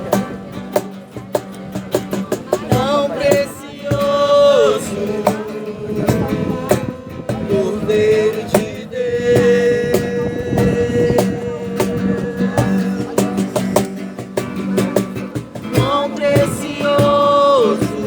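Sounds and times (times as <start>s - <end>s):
strummed acoustic guitar: 0.0s - 18.0s
person singing: 15.7s - 18.0s.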